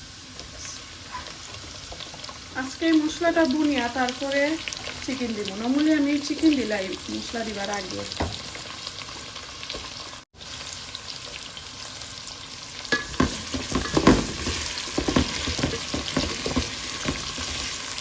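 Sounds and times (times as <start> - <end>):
onions sizzling in oil: 0.0 - 18.0
utensil scraping a pot: 13.0 - 17.8.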